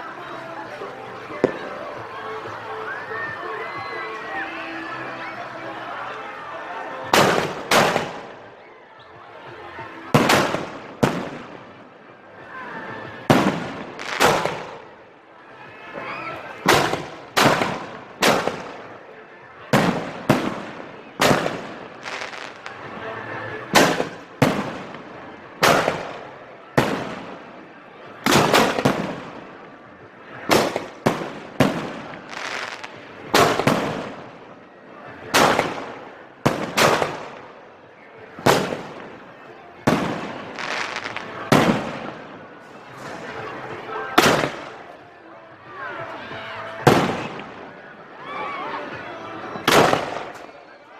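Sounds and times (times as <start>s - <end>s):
fireworks banging: 7.0s - 8.4s, 10.1s - 11.8s, 13.1s - 14.9s, 16.5s - 19.0s, 19.7s - 23.0s, 23.6s - 27.6s, 28.2s - 34.6s, 35.2s - 37.5s, 38.4s - 43.4s, 44.1s - 44.9s, 46.8s - 47.6s, 49.6s - 50.6s.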